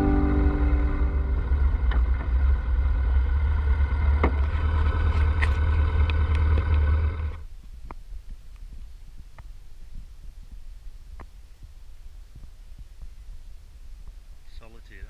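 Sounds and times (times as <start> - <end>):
road noise: 0.0 - 7.5
motorcycle engine rumble: 0.0 - 9.0.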